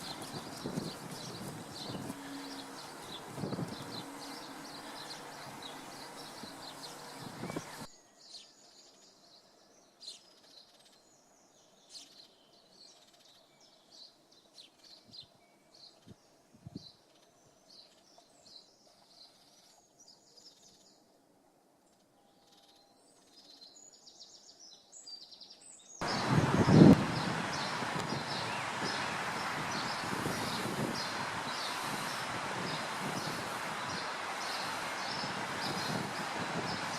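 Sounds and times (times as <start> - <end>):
loud rushing noise: 0.0 - 7.9, 26.0 - 36.9
songbirds chirping: 0.0 - 21.1, 22.1 - 36.9.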